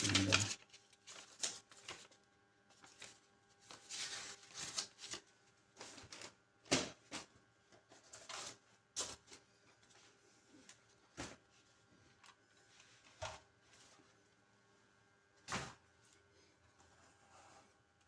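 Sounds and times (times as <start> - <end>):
paper pages rustling: 0.0 - 6.4.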